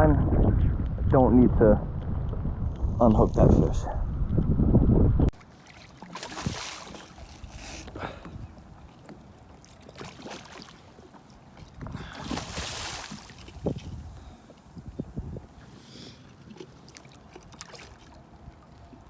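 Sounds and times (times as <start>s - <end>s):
water splashing around kayak: 5.3s - 19.0s.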